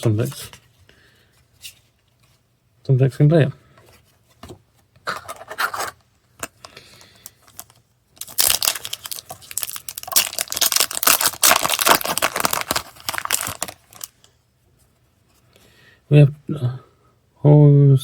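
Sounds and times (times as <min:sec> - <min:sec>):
foil pack tearing and crinkling: 0:07.5 - 0:14.1.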